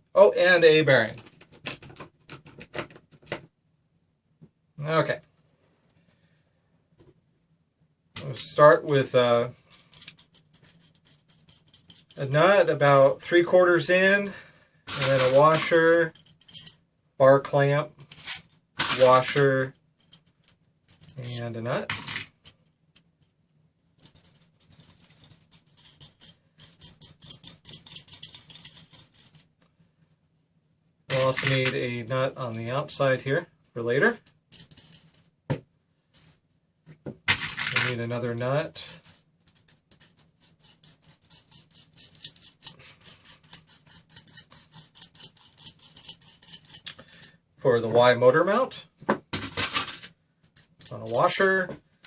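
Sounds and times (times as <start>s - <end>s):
metal nuts rattling on rod: 9.9s - 12.9s, 14.9s - 16.8s, 24.0s - 29.4s, 37.3s - 47.3s.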